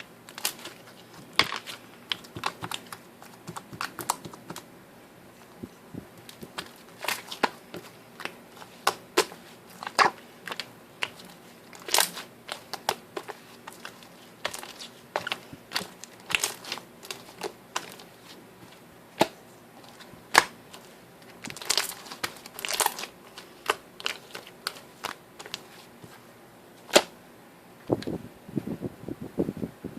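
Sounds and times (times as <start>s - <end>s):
slime popping and crackling: 0.3s - 4.6s, 6.2s - 18.3s, 19.2s - 25.7s.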